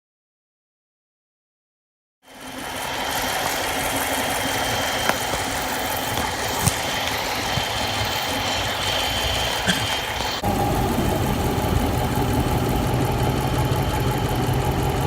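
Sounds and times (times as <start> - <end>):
car engine running: 2.3 - 15.0
thin high whine: 2.3 - 15.0.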